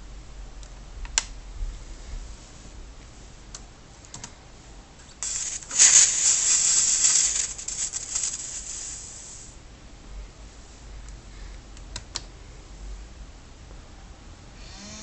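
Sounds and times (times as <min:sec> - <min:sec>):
computer static hiss: 0:05.0 - 0:09.6.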